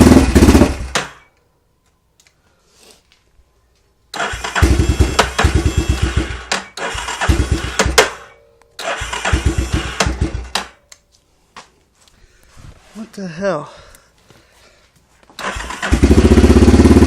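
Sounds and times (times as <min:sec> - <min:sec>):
engine cranking: 0:04.1 - 0:10.7, 0:15.4 - 0:17.0.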